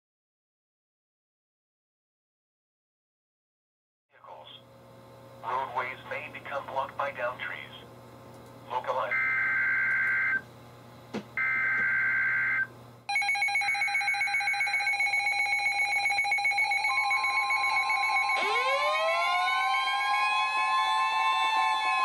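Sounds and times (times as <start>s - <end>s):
steady warning alarm tone: 9.0s - 10.4s, 11.4s - 22.0s
siren-style alarm rising: 11.4s - 22.0s.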